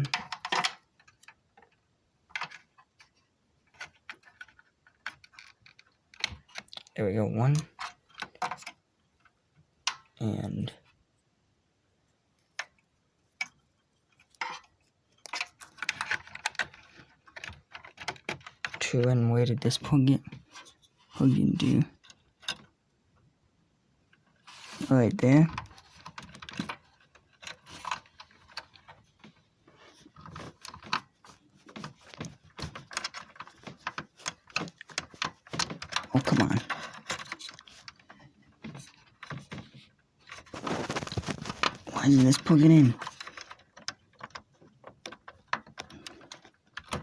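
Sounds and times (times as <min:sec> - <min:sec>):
connectors rattling: 0:24.3 - 0:47.0.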